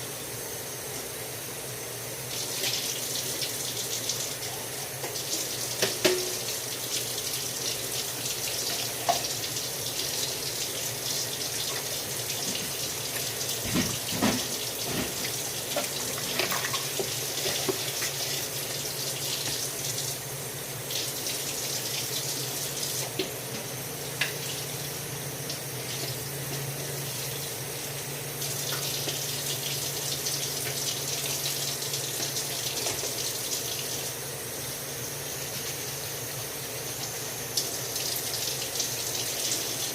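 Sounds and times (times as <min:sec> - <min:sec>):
tap water running into sink: 0:02.3 - 0:20.2, 0:28.4 - 0:34.2, 0:36.9 - 0:39.9.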